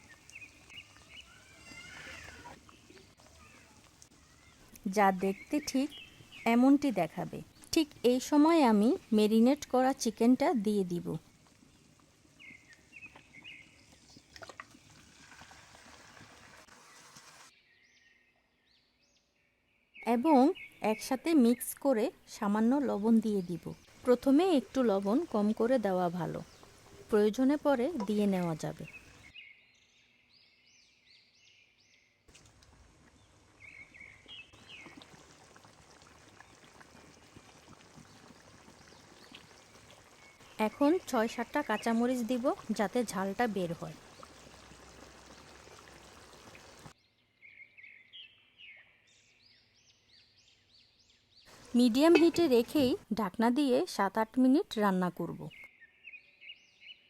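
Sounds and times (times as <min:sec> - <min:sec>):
chicken sizzling in a pan: 0:15.3 - 0:17.5, 0:34.6 - 0:46.9
bird chirping: 0:28.7 - 0:32.2, 0:46.6 - 0:51.5, 0:55.4 - 0:57.0.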